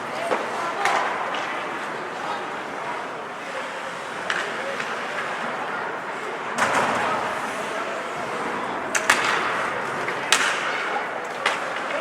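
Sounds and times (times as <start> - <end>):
rink and crowd murmur: 0.0 - 12.0
hockey sticks striking puck: 0.1 - 1.9, 4.0 - 5.5, 8.4 - 12.0.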